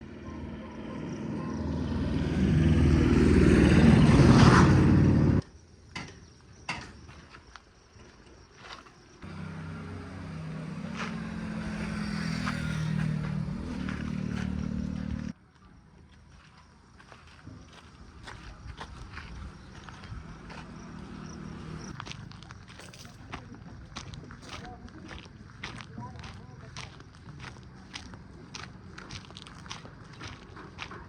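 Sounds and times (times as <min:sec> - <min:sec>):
heavy diesel engine working: 0:00.0 - 0:05.4, 0:09.2 - 0:15.4.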